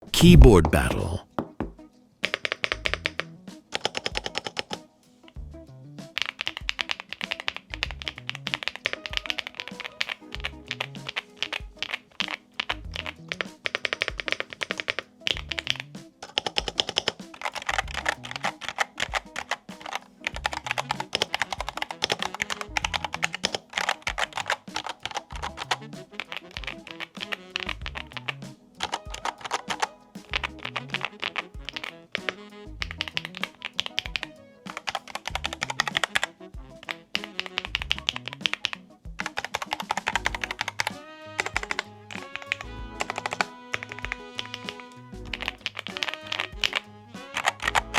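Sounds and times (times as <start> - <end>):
background music with bass: 5.3 - 6.1, 7.7 - 8.5, 12.7 - 13.3, 15.3 - 16.1, 17.7 - 18.5, 22.7 - 23.4, 25.3 - 26.8, 27.6 - 29.2, 30.2 - 31.7, 32.4 - 34.3, 35.3 - 36.9, 37.6 - 39.3, 40.2 - 47.9
mechanical keyboard typing: 16.2 - 25.8, 28.8 - 29.9, 33.0 - 36.3, 37.6 - 44.8.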